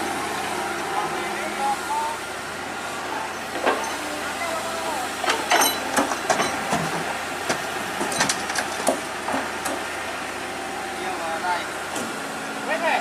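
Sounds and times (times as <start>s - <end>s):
excavator engine running: 0.0s - 13.0s
metal knocks and clanks: 5.2s - 9.9s.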